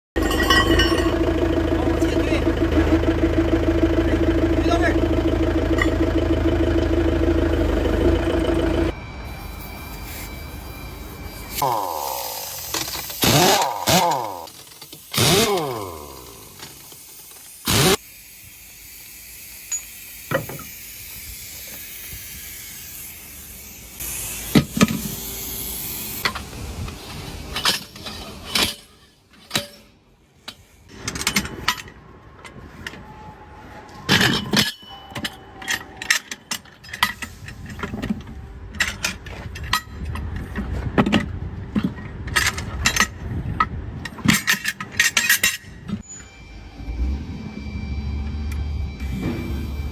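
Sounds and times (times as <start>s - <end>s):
tools clanking on wheel: 0.2s - 1.4s, 5.7s - 6.2s, 27.1s - 33.0s, 34.0s - 46.2s
steady hiss: 16.3s - 27.7s.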